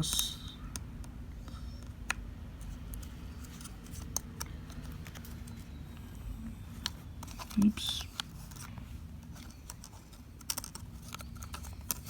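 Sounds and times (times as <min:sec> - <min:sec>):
low steady hum: 0:00.0 - 0:12.0
light clicks and scrapes: 0:02.6 - 0:12.0.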